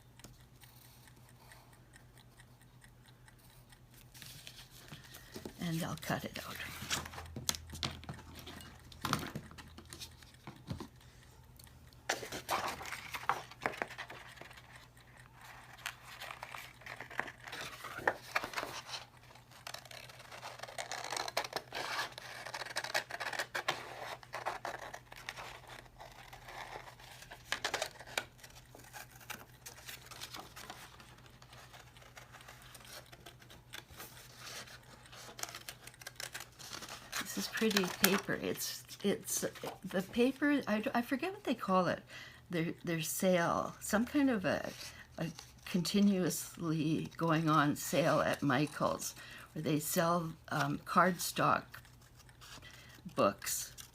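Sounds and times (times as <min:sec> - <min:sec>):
paper rustling: 0:12.1 - 0:14.7
scissors snipping cardstock: 0:15.6 - 0:38.4.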